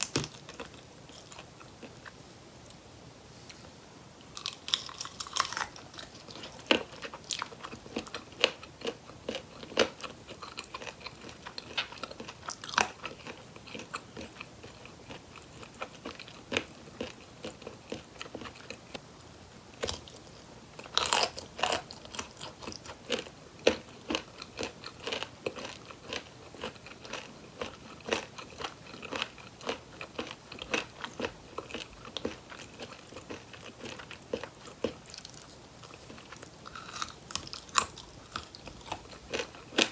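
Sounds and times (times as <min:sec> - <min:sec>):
chewing: 0:00.0 - 0:02.8, 0:04.4 - 0:18.8, 0:19.8 - 0:39.9
crispy batter crunching: 0:04.4 - 0:18.7.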